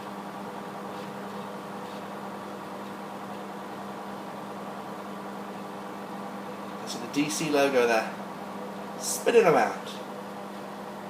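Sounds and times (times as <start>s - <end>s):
microwave oven humming: 0.0s - 11.0s.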